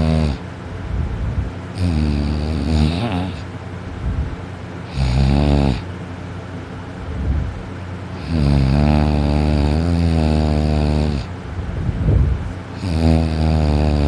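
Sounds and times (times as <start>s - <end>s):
man snoring loudly: 0.0s - 0.4s, 1.8s - 3.5s, 4.9s - 5.9s, 8.2s - 11.3s, 12.8s - 14.0s.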